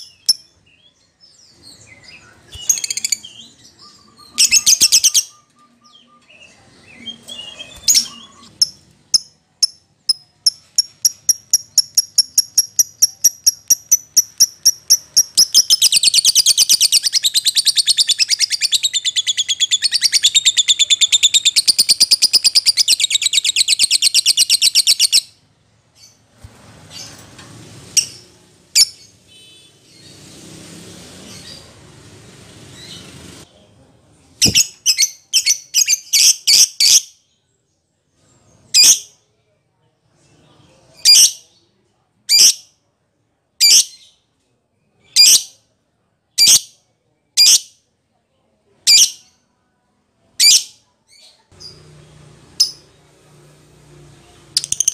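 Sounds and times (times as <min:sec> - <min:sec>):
lovebird chirping and trilling: 0:01.6 - 0:25.3, 0:28.8 - 0:29.1, 0:34.4 - 0:37.1, 0:52.6 - 0:52.8.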